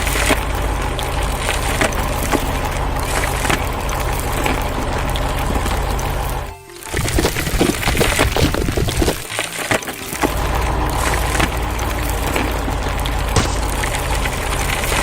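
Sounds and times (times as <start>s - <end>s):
heavy machine engine droning: 0.0s - 6.5s, 9.8s - 15.0s
material cracking and crunching: 13.3s - 15.0s.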